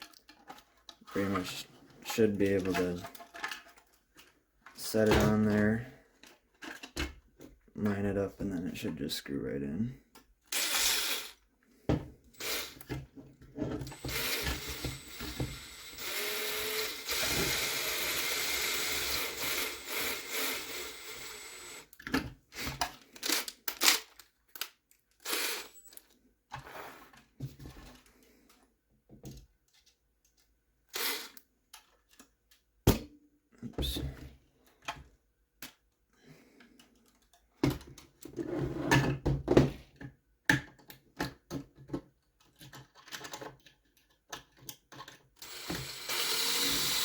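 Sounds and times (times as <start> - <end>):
plastic parts clicking and knocking: 0.0 - 9.1, 11.9 - 47.0
steady whirring: 13.9 - 21.8, 45.4 - 47.0.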